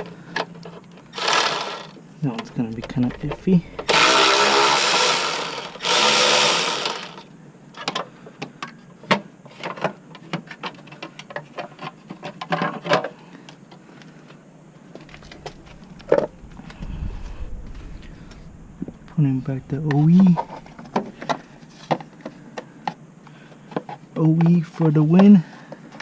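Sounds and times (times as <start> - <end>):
handheld power tool running: 1.1 - 2.0, 3.8 - 7.3.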